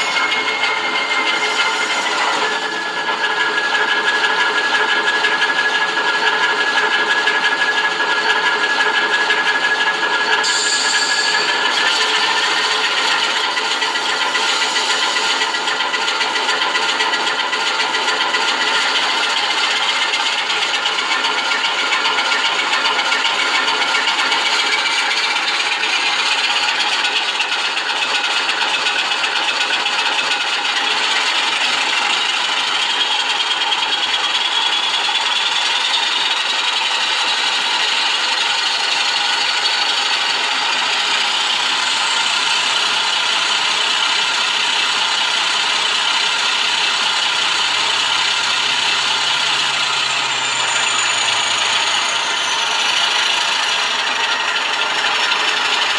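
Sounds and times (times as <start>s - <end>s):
rising whine: 0.0s - 6.2s, 10.3s - 16.0s, 45.4s - 55.9s
diesel engine sound through loudspeaker: 0.0s - 55.9s.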